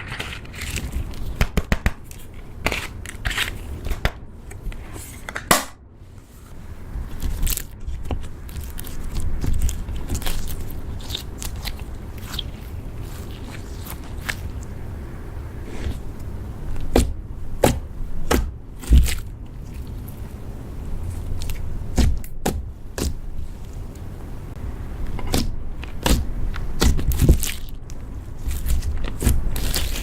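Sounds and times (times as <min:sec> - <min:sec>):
slime clicking and crackling: 0:07.2 - 0:14.7, 0:25.2 - 0:30.0.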